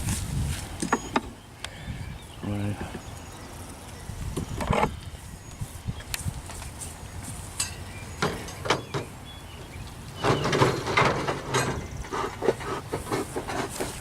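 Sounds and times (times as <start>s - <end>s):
clattering and scraping: 10.2s - 14.0s.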